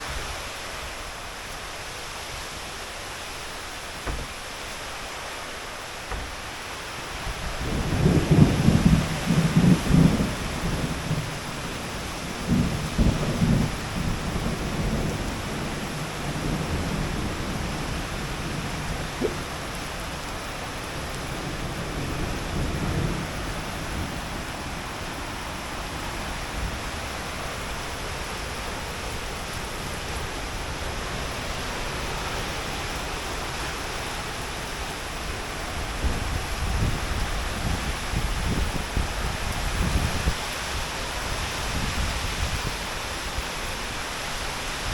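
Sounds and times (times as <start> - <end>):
heavy rain pouring: 0.0 - 44.9
strong wind: 0.0 - 44.9
low rumbles: 3.9 - 5.1.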